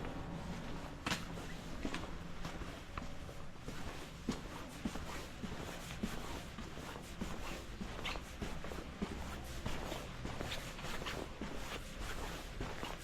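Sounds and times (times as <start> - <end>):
footsteps walking: 0.0 - 13.0
low background noise: 0.0 - 13.0.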